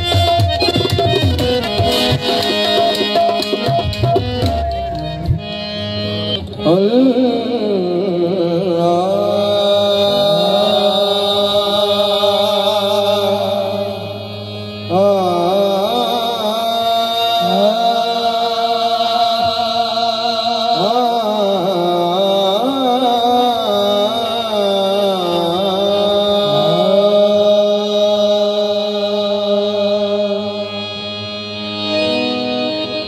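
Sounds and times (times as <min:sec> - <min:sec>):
person singing wordless melody: 0:05.4 - 0:33.0.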